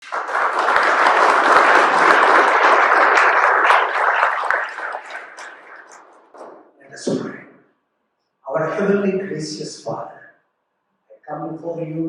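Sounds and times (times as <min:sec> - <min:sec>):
crowd applauding: 0:00.0 - 0:06.8.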